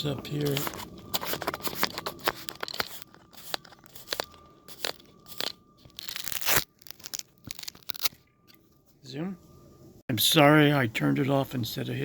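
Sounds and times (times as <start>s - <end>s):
faint steady high tone: 7.1s - 12.0s.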